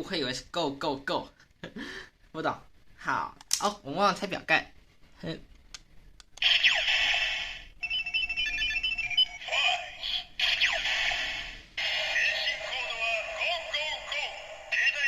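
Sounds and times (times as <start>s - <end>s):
toy chiming sweeping tones: 7.8s - 9.5s.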